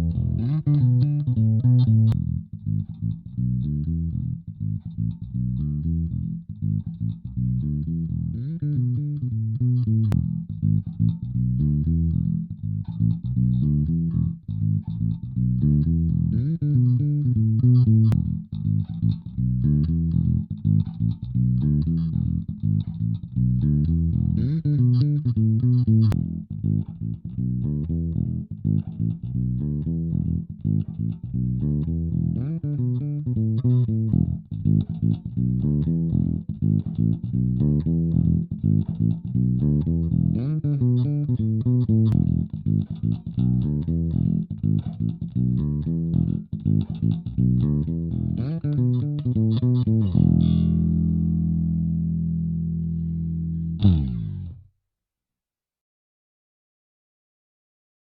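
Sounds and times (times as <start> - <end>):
electric bass line: 0.0 - 54.7.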